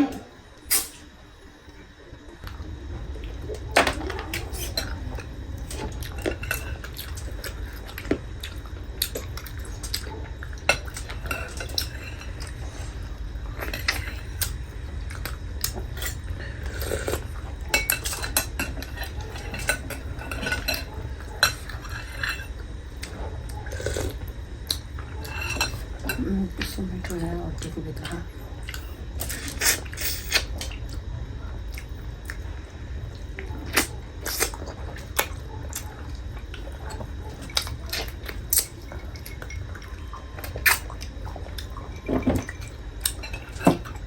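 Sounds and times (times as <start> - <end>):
steady low hum: 0.0 - 44.0
cutlery clinking against dishes: 17.8 - 22.5.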